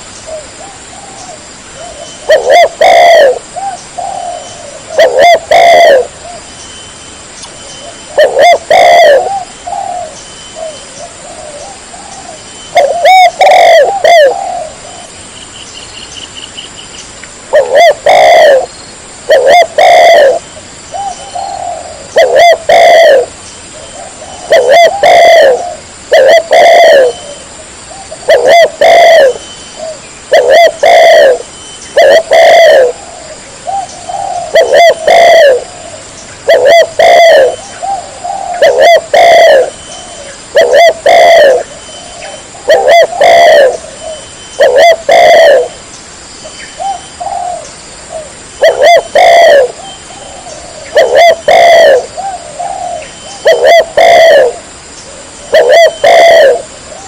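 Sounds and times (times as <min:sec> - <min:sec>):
dove cooing: 0:00.0 - 0:06.4, 0:07.8 - 0:15.1, 0:17.5 - 0:18.7, 0:19.3 - 0:45.8, 0:46.8 - 0:57.0.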